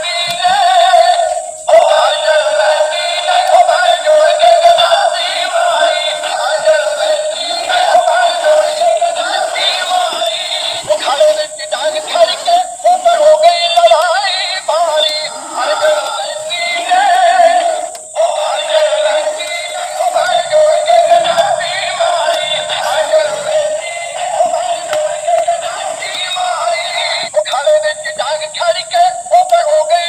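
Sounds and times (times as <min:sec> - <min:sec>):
electronically processed singing voice: 0:00.0 - 0:30.0
background music: 0:13.8 - 0:26.6.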